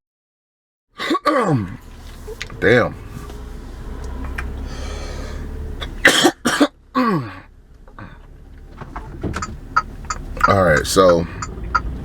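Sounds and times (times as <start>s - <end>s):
man clearing throat: 1.0s - 1.8s, 5.9s - 7.5s
man coughing: 1.0s - 1.8s, 5.8s - 7.5s
low steady rumble: 1.6s - 12.0s.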